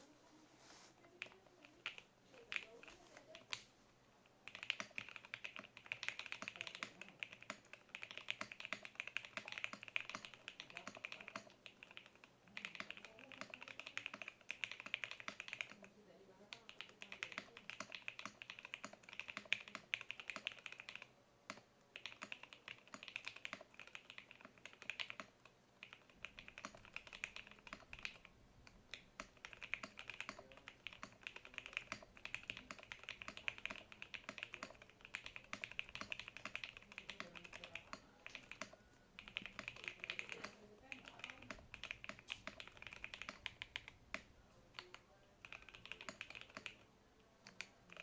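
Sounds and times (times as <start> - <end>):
mechanical keyboard typing: 1.2 - 3.7, 4.4 - 15.9, 16.5 - 48.0.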